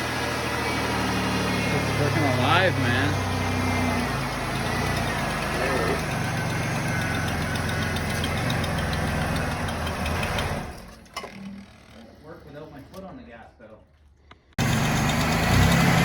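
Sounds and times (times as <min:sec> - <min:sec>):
car engine idling: 0:00.0 - 0:11.0, 0:14.6 - 0:16.0.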